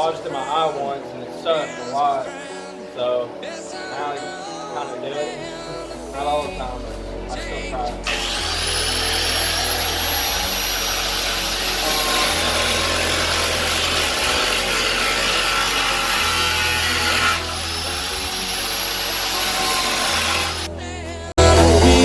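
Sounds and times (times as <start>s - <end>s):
power cutting tool whining: 8.1s - 20.7s.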